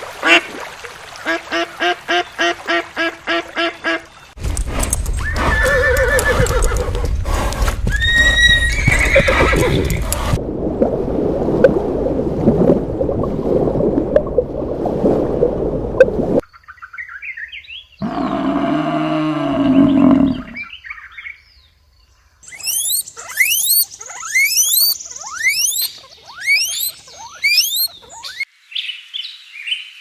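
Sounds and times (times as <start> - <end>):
horse neighing: 5.2 - 7.1, 7.9 - 10.4, 18.0 - 20.6.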